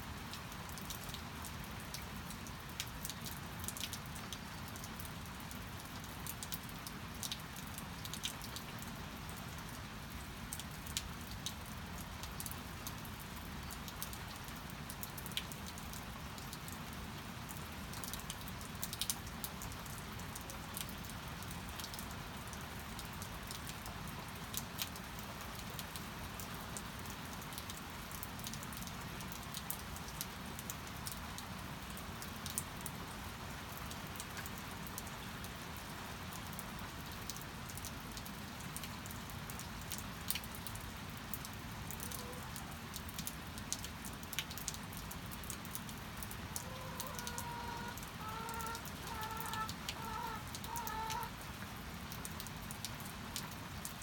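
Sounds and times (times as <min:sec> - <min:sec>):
steady rain: 0:00.0 - 0:54.0
water dripping: 0:39.9 - 0:53.5
hen clucking: 0:46.6 - 0:51.3.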